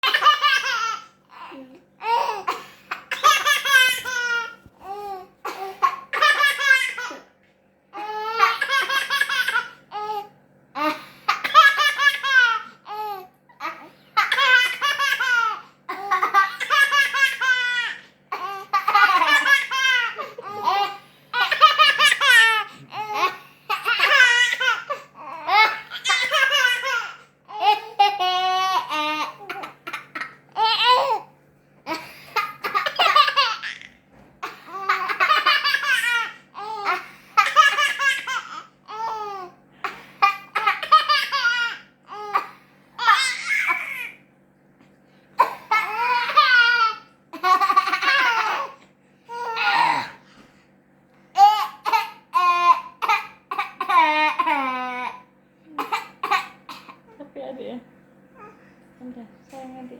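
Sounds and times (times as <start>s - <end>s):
baby laughing: 0.0s - 7.2s, 8.0s - 31.3s, 31.9s - 44.2s, 45.4s - 50.2s
person coughing: 55.7s - 57.0s.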